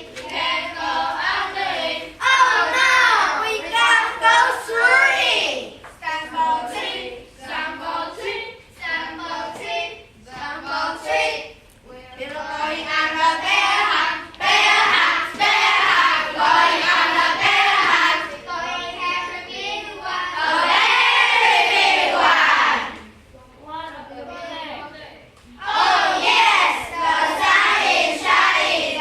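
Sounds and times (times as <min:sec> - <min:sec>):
children singing in unison: 0:12.2 - 0:23.0, 0:25.6 - 0:29.0.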